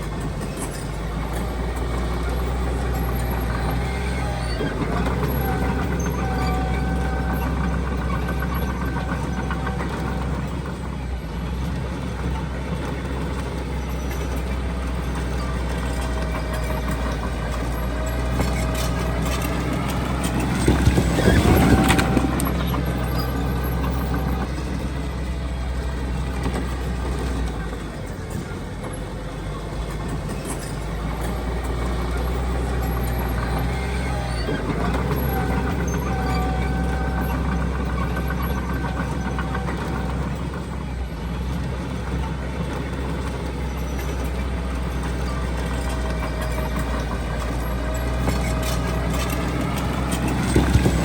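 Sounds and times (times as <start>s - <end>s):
diesel machinery engine hum: 0.0s - 51.0s
machinery whining tones: 0.0s - 51.0s.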